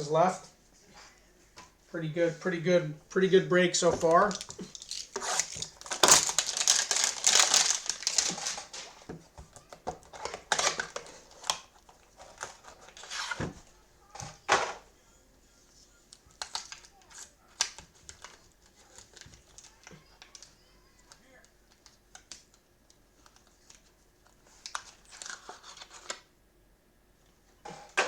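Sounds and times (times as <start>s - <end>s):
cards rustling and clicking: 3.8s - 14.8s, 16.0s - 26.3s
cardboard and plastic tearing: 3.9s - 13.6s, 16.3s - 22.4s, 24.5s - 26.3s.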